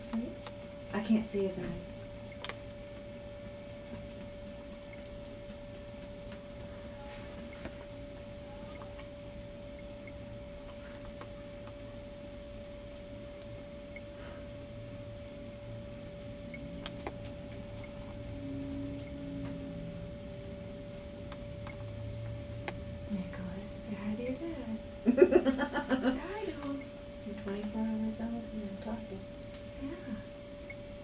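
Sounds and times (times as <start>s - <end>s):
low room hum: 0.0s - 31.0s
steady electronic tone: 11.3s - 24.8s.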